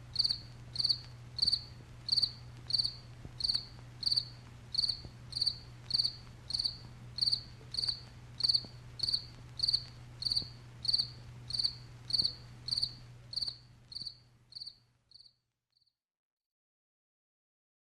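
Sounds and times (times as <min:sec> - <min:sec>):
cricket chirping: 0:00.2 - 0:15.4.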